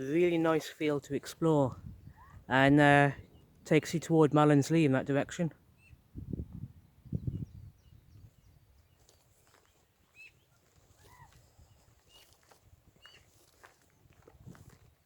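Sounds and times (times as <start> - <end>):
faint bird chirps: 6.8 - 12.4, 13.0 - 13.4.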